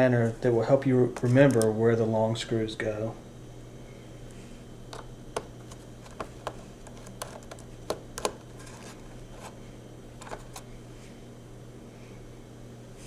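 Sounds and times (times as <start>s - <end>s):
steady low hum: 0.0s - 13.0s
screwdriver clicks and taps: 5.0s - 8.4s.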